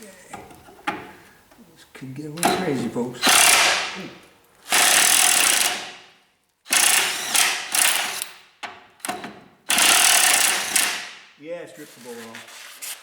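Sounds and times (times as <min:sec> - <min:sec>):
pneumatic impact wrench hammering: 0:02.4 - 0:04.0, 0:04.7 - 0:06.1, 0:06.7 - 0:11.3.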